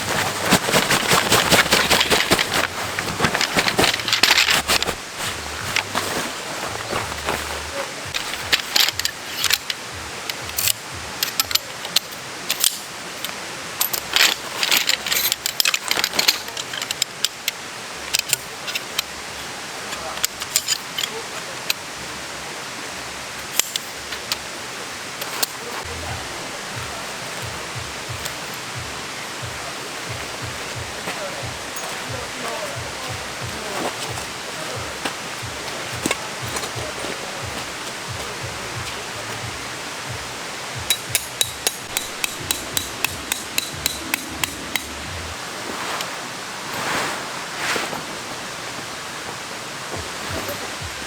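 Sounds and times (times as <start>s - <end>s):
soft low thuds: 0.0s - 8.2s
steady rushing noise: 0.0s - 13.8s, 21.1s - 51.0s
rustling: 0.0s - 17.6s, 25.1s - 51.0s
hammer striking metal tent peg: 40.8s - 45.0s.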